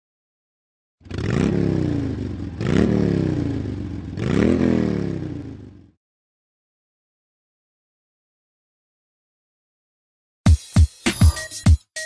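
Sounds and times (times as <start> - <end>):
motorcycle engine revving: 1.0 - 6.0.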